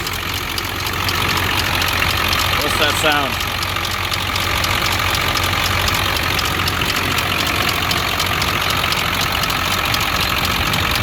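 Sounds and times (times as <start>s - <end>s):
diesel engine idling: 0.0s - 11.0s
rapid even engine clicking: 0.0s - 11.0s.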